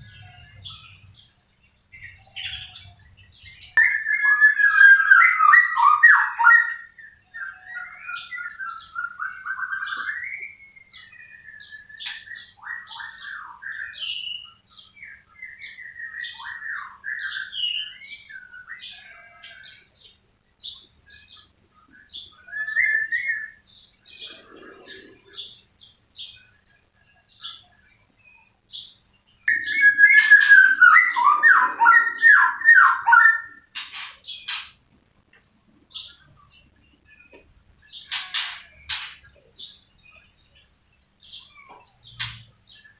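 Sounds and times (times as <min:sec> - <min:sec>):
bird singing whistled phrases: 0:03.7 - 0:19.0, 0:21.9 - 0:23.6, 0:29.5 - 0:33.7.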